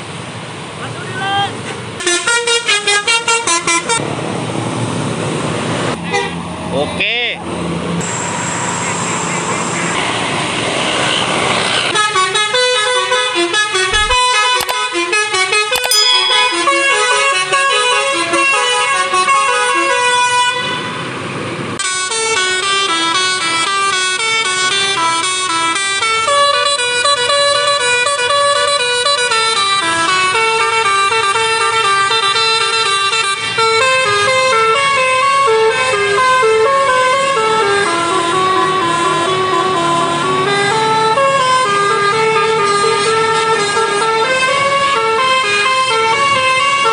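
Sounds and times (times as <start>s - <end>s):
multi-tone bus horn tune: 2.0s - 4.0s, 18.8s - 21.2s, 26.0s - 46.9s.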